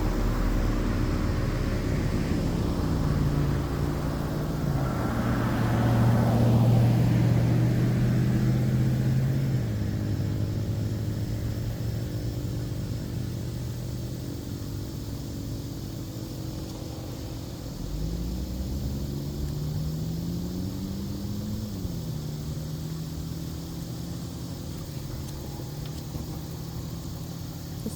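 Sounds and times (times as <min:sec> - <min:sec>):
vehicle passing: 0:00.0 - 0:11.8
car engine accelerating: 0:00.0 - 0:27.9.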